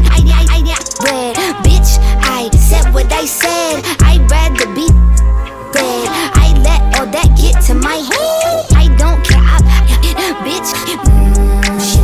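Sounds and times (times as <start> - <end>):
hip hop vocal: 0.0 - 12.0
deep sustained bass notes: 1.7 - 3.1, 4.0 - 5.5, 6.4 - 7.9, 8.7 - 10.2, 11.1 - 12.0.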